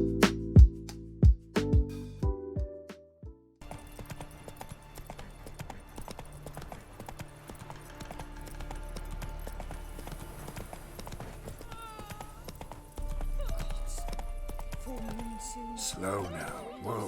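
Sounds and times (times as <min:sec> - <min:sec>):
horse hooves clip-clopping: 0:03.6 - 0:17.0.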